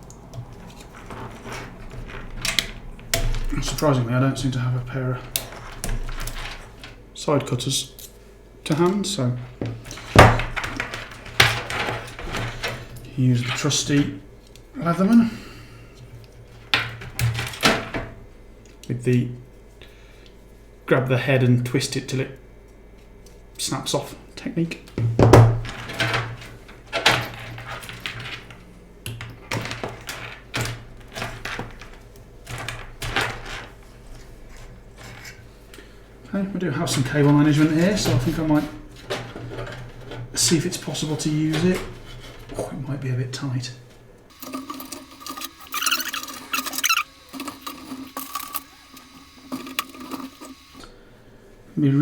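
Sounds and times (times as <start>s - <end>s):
handling clicks and knocks: 0.0s - 7.2s, 7.9s - 15.2s, 24.9s - 35.9s, 36.8s - 43.0s
cables rustling: 0.0s - 20.7s, 24.7s - 51.6s.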